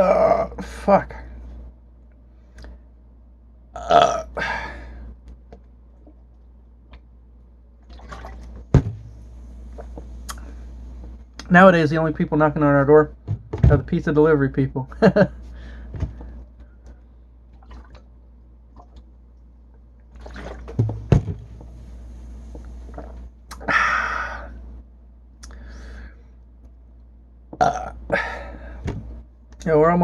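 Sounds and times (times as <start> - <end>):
man burping: 0.0 - 0.7, 3.8 - 4.8, 27.6 - 28.5
man drinking soda: 9.6 - 11.2, 22.3 - 24.7, 25.4 - 25.9.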